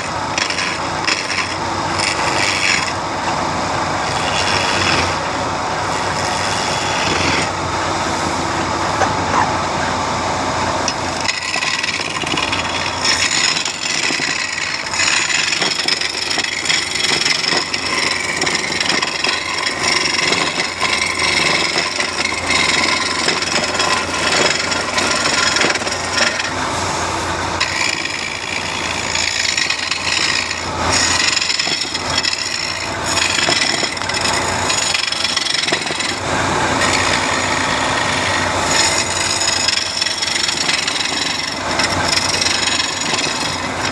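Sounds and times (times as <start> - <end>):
woodworking machine sawing wood: 0.0 - 43.9.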